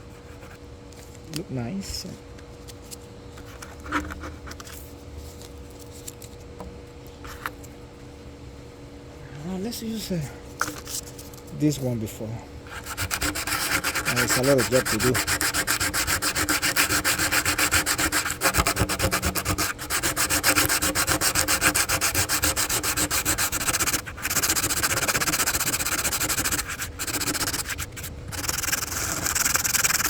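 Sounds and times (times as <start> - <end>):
sandpaper rubbing: 12.7 - 30.0.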